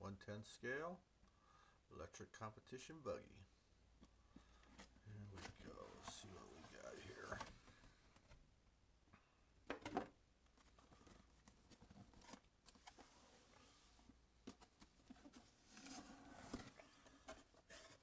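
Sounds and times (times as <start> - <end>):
cardboard packaging rustling: 10.5 - 18.0.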